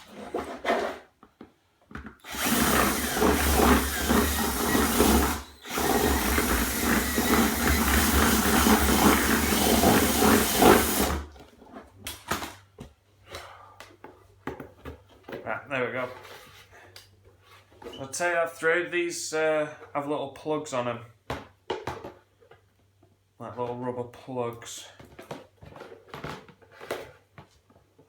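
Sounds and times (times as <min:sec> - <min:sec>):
power drill drilling plastic: 0:02.2 - 0:11.4.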